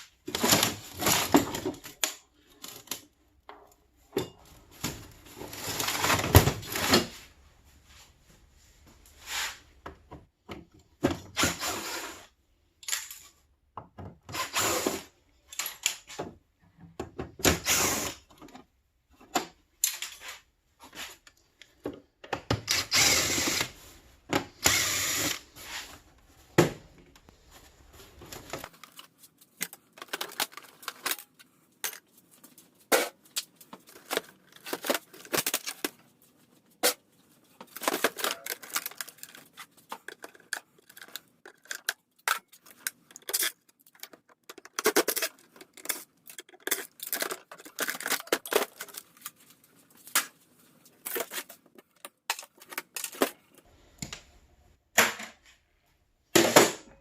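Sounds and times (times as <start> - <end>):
power drill running: 22.7 - 23.7, 24.6 - 25.4.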